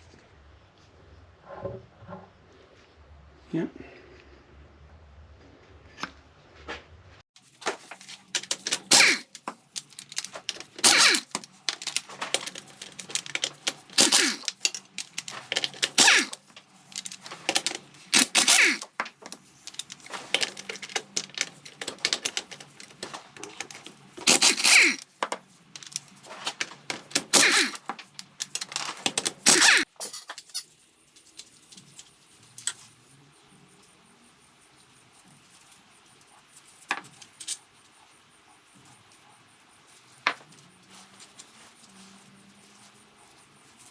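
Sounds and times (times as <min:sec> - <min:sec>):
metal tools clinking and scraping: 0:07.6 - 0:32.9.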